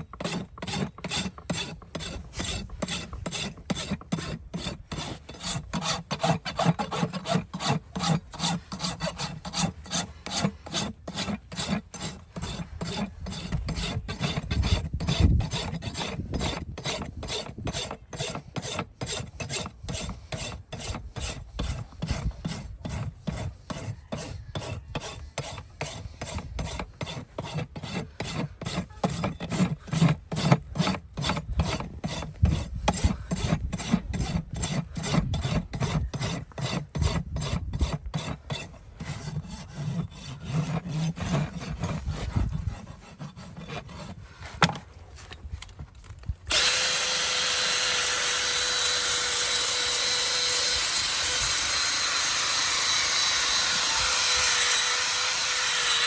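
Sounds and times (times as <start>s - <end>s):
hand filing strokes: 0.0s - 45.4s, 46.5s - 56.0s
steady motor noise: 46.5s - 56.0s.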